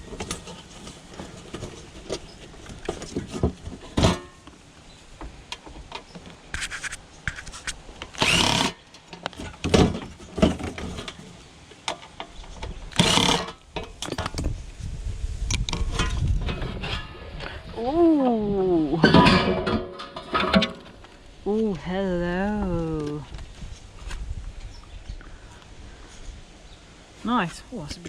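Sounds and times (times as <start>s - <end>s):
loud rasping bursts: 7.6s - 8.8s, 12.9s - 13.6s.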